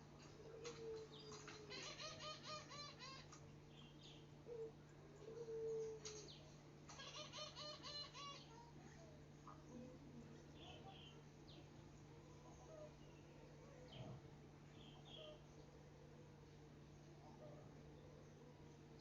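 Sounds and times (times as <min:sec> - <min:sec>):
birds chirping: 0:00.0 - 0:08.8, 0:09.5 - 0:15.8
faint steady hum: 0:00.0 - 0:19.0.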